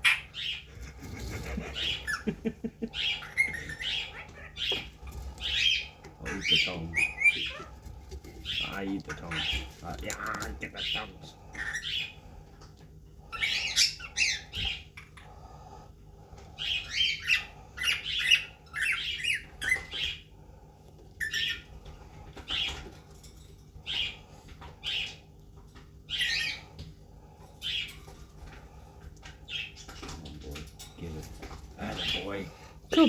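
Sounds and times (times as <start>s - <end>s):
pet animal high-pitched calls: 3.0s - 7.8s.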